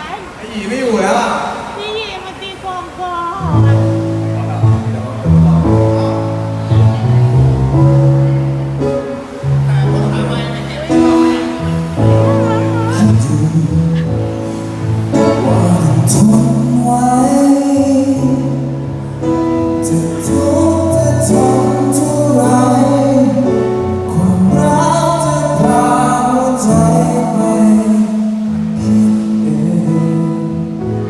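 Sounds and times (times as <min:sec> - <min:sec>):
live band playing: 0:01.8 - 0:17.1
man singing: 0:12.2 - 0:14.3, 0:15.1 - 0:18.9, 0:19.7 - 0:31.0.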